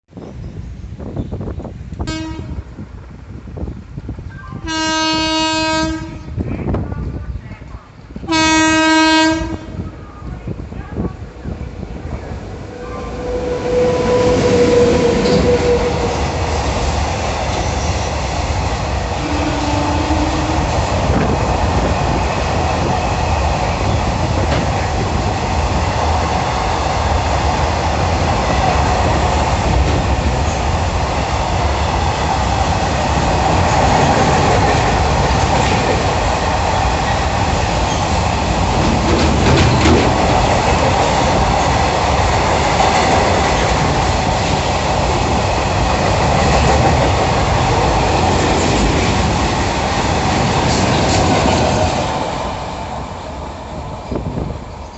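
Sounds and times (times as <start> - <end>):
train passing at speed: 0.2 - 54.9
wheels clacking over rail joints: 37.4 - 52.2.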